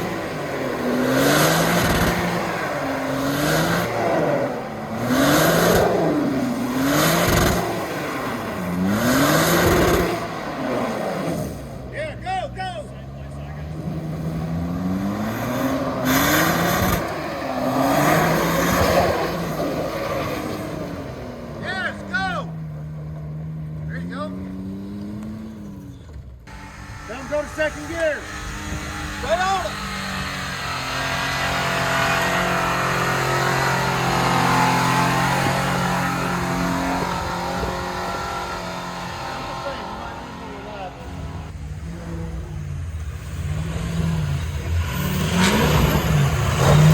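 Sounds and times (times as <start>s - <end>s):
off-road vehicle engine revving: 0.0s - 46.9s.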